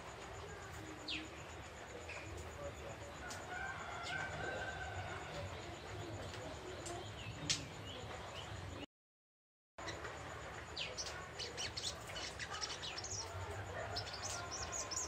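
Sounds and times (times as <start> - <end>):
bird twittering in high chirps: 10.8 - 15.0.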